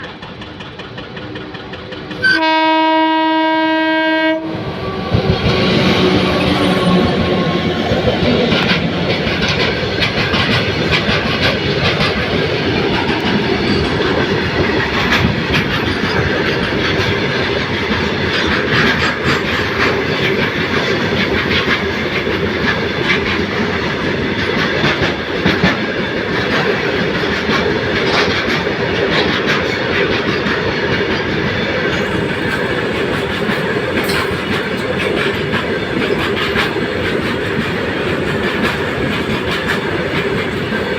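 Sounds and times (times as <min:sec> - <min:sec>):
train wheels clattering over rail joints: 0:00.0 - 0:02.6, 0:05.0 - 0:40.9.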